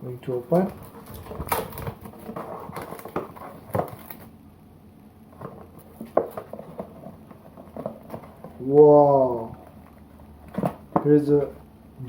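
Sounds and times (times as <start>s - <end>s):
food box crinkling and tapping: 0.4s - 4.4s, 5.3s - 8.9s, 9.6s - 11.4s.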